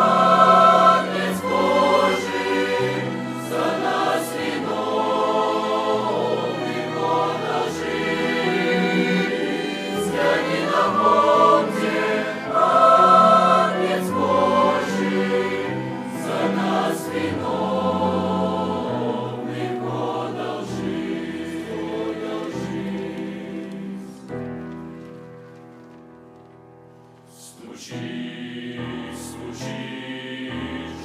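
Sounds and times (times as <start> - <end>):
choir singing a hymn: 0.0 - 24.3, 27.4 - 31.0.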